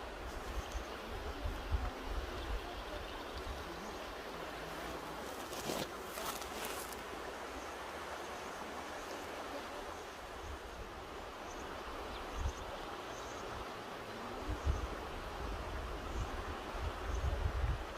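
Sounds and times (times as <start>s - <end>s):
river rushing: 0.0s - 17.9s.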